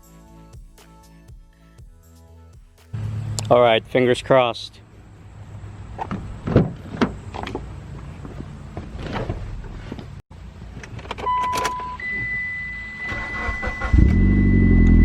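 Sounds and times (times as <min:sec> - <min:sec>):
car electronic beep: 0:11.2 - 0:15.0.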